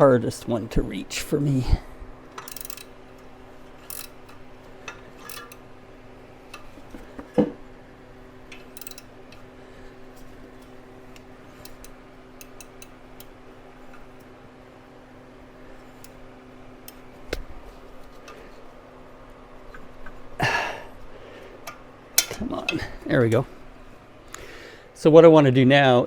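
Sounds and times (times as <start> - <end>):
clicks of belt on pulleys: 2.3 - 5.6, 8.5 - 9.5, 10.2 - 14.3.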